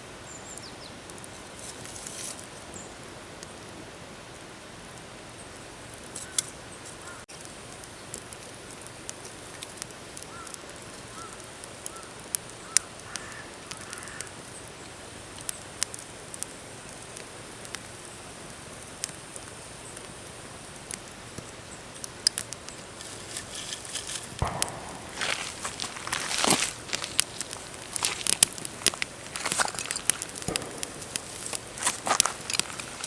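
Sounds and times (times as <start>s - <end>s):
faint outdoor hiss: 0.0s - 33.0s
campfire crackling and popping: 0.4s - 3.6s, 4.3s - 33.0s
rustling handling noise: 23.0s - 33.0s.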